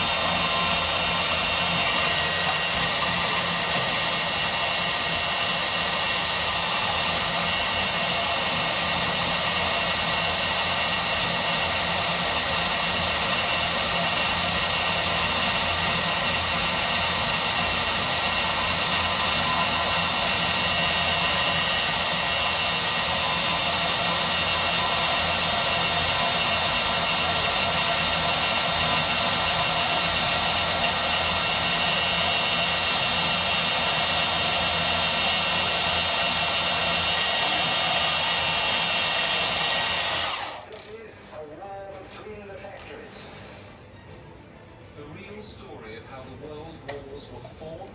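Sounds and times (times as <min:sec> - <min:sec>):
bandsaw cutting through aluminium: 0:00.0 - 0:40.8.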